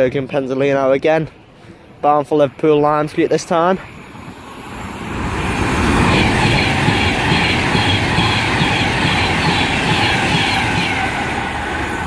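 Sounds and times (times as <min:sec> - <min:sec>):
train wheels rushing on rail: 0:03.2 - 0:12.0.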